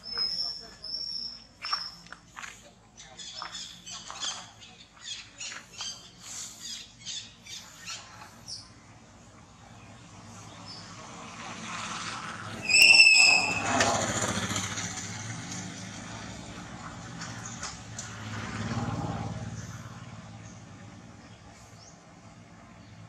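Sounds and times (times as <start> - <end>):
vehicle passing: 3.5 - 23.0
loud high squeal: 12.5 - 14.4
short high squeaks: 12.5 - 14.4.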